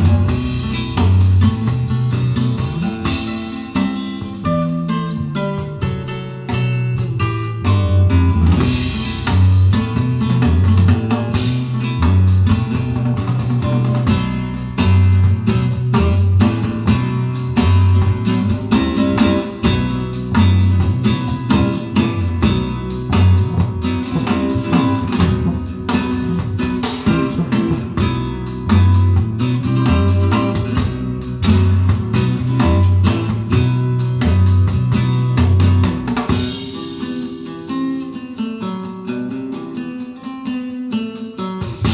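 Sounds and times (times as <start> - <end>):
guitar music with bass line: 0.0 - 41.9.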